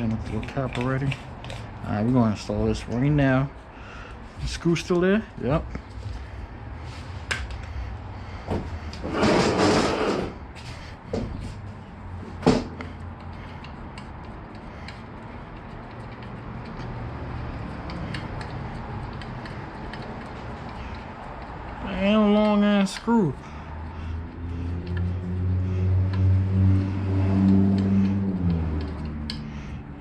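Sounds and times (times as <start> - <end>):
rustling scrape: 9.0 - 11.6
clicks and knocks of tools: 12.4 - 23.1, 27.4 - 29.5.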